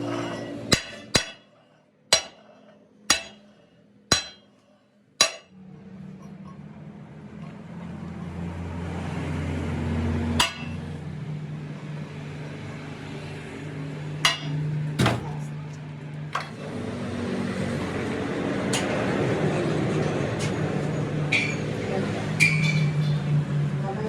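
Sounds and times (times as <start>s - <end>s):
low mechanical hum: 0.0s - 24.0s
sharp metal knocks: 0.7s - 1.5s, 2.1s - 4.6s, 5.2s - 5.6s, 10.4s - 10.8s, 14.2s - 15.4s.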